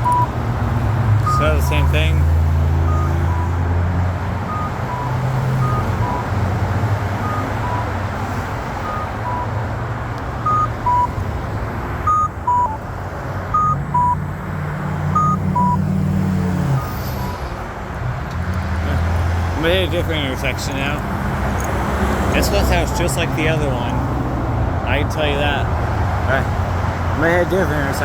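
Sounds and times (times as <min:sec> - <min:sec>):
pedestrian signal beeps: 0:00.0 - 0:00.3, 0:01.2 - 0:03.7, 0:04.4 - 0:06.5, 0:07.2 - 0:08.0, 0:08.8 - 0:09.6, 0:10.4 - 0:11.2, 0:12.0 - 0:12.8, 0:13.5 - 0:14.2, 0:15.1 - 0:15.9
traffic hum: 0:00.0 - 0:28.0.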